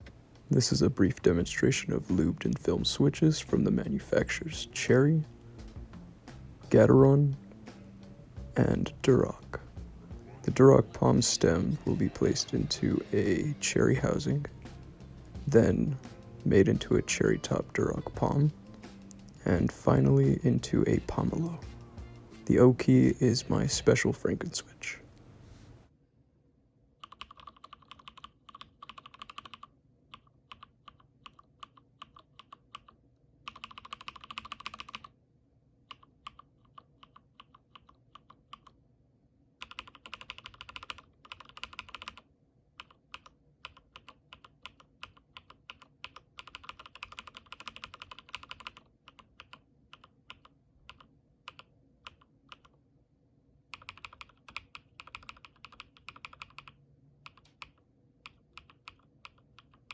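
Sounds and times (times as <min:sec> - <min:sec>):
mechanical keyboard keystrokes: 0:27.0 - 0:32.9, 0:33.5 - 0:35.1, 0:39.6 - 0:42.2, 0:42.8 - 0:52.7, 0:53.8 - 0:59.9.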